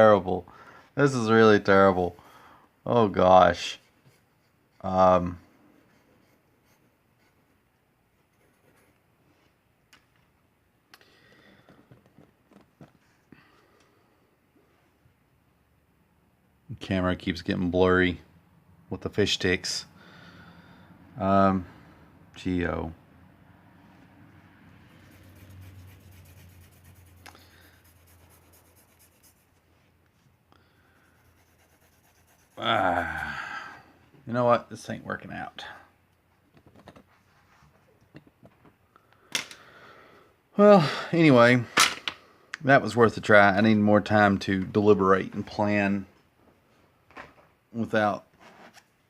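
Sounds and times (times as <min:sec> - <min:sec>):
soft scratching: 0:03.3 - 0:09.6, 0:24.3 - 0:30.4, 0:31.0 - 0:32.6, 0:36.6 - 0:38.0
drawing tool scratching paper: 0:24.9 - 0:29.6, 0:31.0 - 0:32.6.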